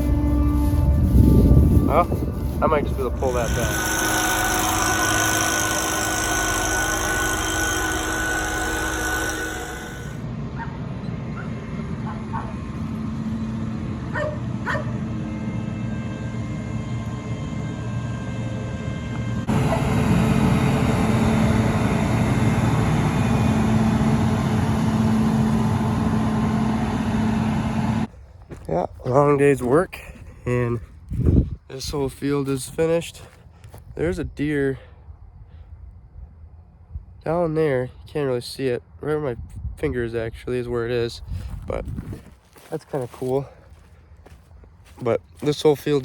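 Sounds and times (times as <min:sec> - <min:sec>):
farm machinery engine humming: 0:00.0 - 0:10.4, 0:16.0 - 0:28.1, 0:41.4 - 0:46.0.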